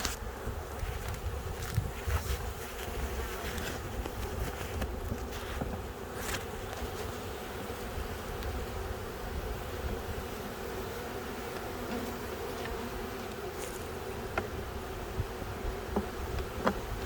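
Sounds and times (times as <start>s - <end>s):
honeybees buzzing: 0.0s - 17.0s
hive tool knocking on wood: 14.3s - 14.6s, 15.9s - 17.0s.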